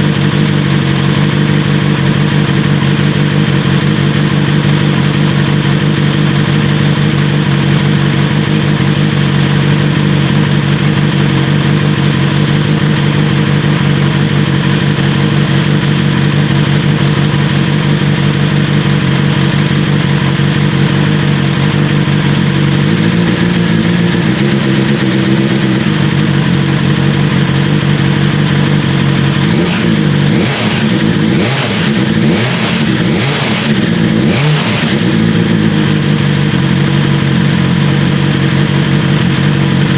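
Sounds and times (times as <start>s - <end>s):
motorcycle engine idling: 0.0s - 39.9s
throttle blips revving engine: 9.6s - 39.9s.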